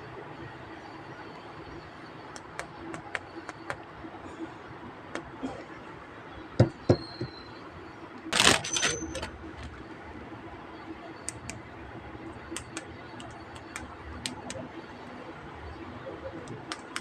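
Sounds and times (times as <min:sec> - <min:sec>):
plastic toy figures clicking: 0:16.4 - 0:17.0.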